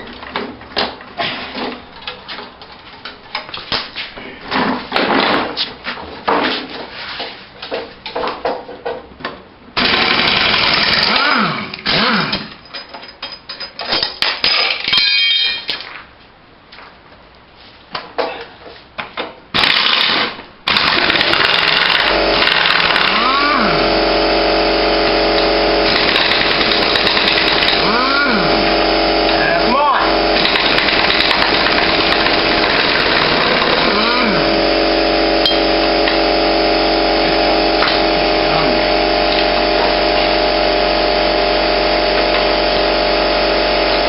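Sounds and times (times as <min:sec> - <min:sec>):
tools and parts clattering: 0:12.4 - 0:16.0
impact driver hammering: 0:19.6 - 0:23.6, 0:25.3 - 0:29.4, 0:30.4 - 0:34.4.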